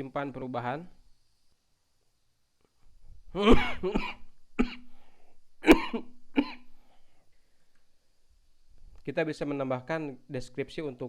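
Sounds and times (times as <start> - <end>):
man coughing: 3.4 - 4.9, 5.6 - 6.7.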